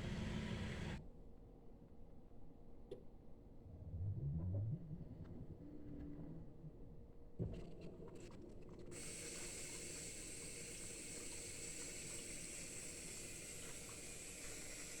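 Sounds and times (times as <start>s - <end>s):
dishwasher water intake hiss: 9.0s - 15.0s.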